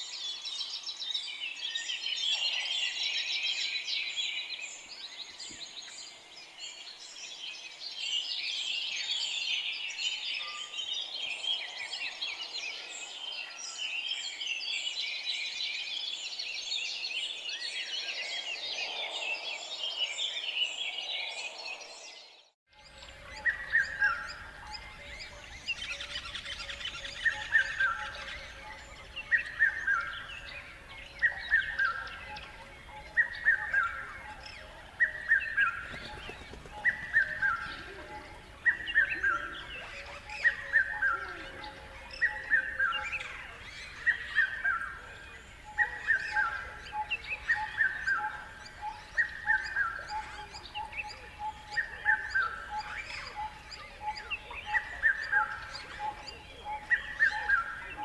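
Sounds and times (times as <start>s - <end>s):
birds singing and chirping: 19.8s - 58.0s.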